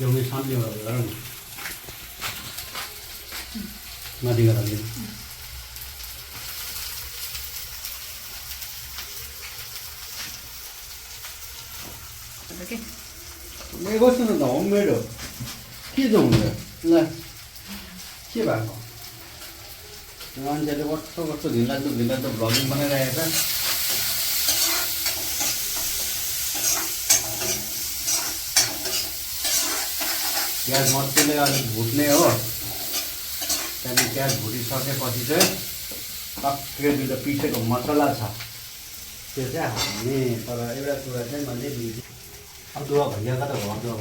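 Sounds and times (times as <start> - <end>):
onions sizzling in oil: 0.0 - 44.0
spatula scraping a pan: 22.4 - 34.4.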